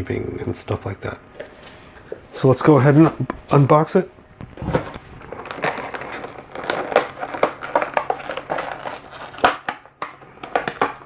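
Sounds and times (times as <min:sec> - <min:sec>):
packaging crinkling: 0:04.4 - 0:11.0.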